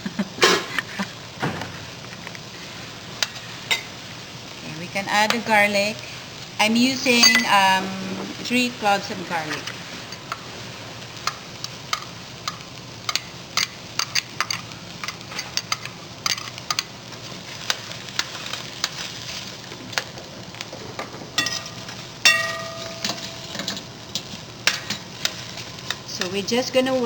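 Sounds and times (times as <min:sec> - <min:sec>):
onions sizzling in a pan: 0:00.0 - 0:27.0
ringing metal clanks: 0:07.2 - 0:07.6, 0:22.3 - 0:23.5.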